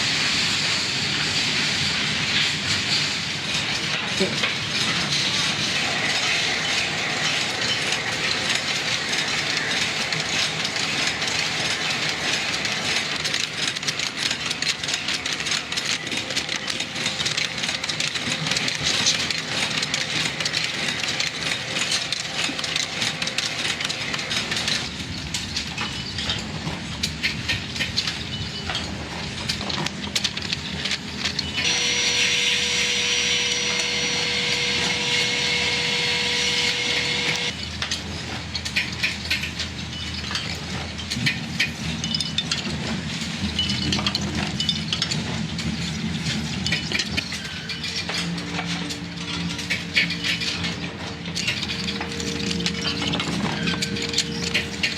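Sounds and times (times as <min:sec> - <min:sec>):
machinery clattering: 0:01.1 - 0:54.9
high whine: 0:31.6 - 0:37.5.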